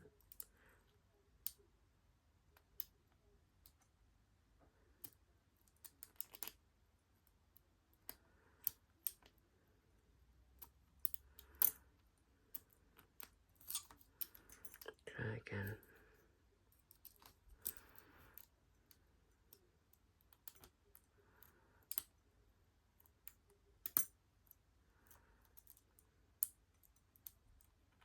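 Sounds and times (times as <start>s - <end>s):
lock pick clicking in padlock: 5.0s - 6.6s, 23.0s - 24.1s.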